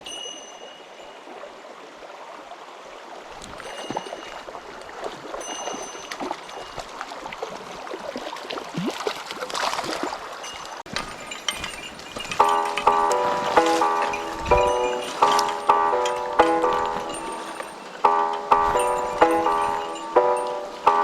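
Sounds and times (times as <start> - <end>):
stream babbling over rocks: 0.1 - 21.0.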